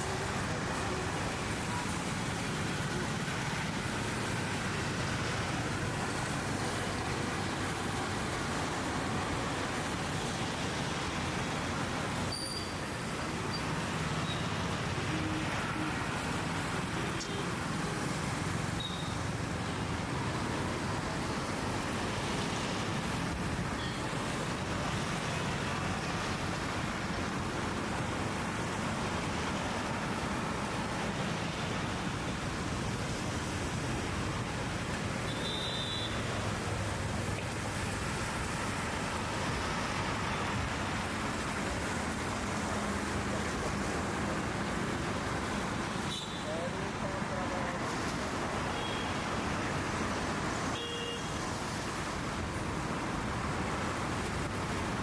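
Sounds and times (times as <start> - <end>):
city road traffic hum: 0.0 - 55.0.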